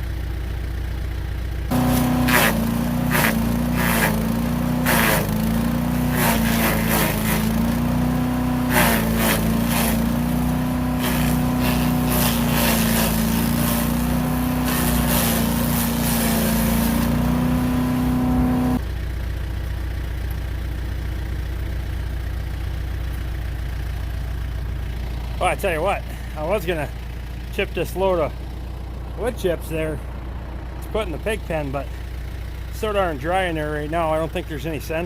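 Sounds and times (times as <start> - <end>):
engine knocking and clatter: 0.0 - 7.9, 18.8 - 35.0
engine running: 0.0 - 35.0.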